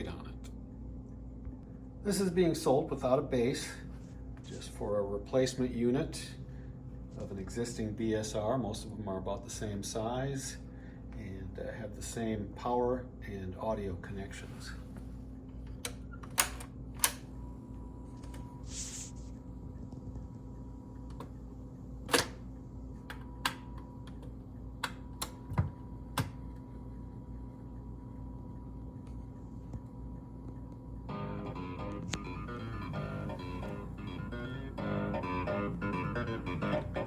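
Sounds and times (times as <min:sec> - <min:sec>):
record changer hum: 0:00.0 - 0:37.0
mechanism clicks and knocks: 0:15.8 - 0:17.2
music from record: 0:31.1 - 0:37.0.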